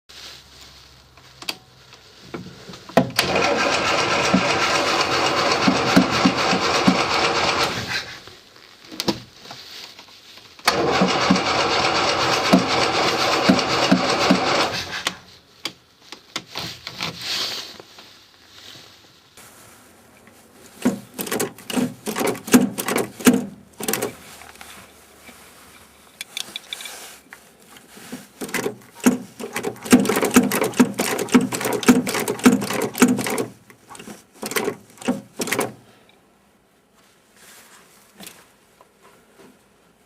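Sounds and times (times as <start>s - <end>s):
engine cranking on starter: 3.1s - 8.2s, 10.6s - 15.2s, 21.2s - 24.2s, 28.4s - 33.6s, 34.4s - 35.8s.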